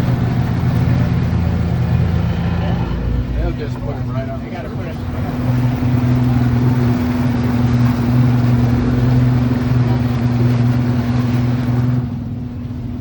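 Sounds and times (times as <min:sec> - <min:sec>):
boat engine humming: 0:00.0 - 0:13.0.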